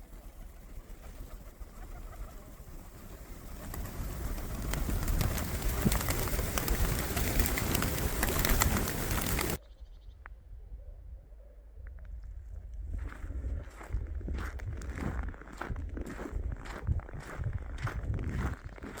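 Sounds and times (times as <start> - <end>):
gusty wind buffeting microphone: 2.2 - 9.6, 12.2 - 19.0.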